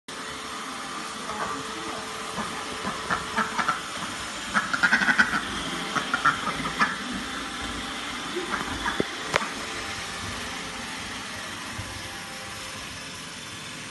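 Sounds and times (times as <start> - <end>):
vacuum cleaner running: 0.1 - 13.9
duck calling: 2.8 - 3.8, 4.5 - 7.0.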